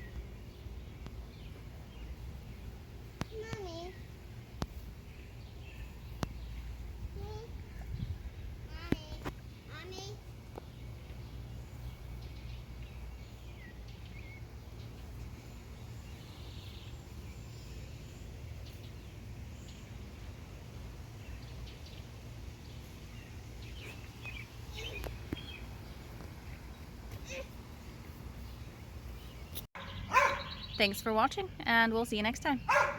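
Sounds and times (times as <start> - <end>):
bird chirps: 28.4 - 31.6.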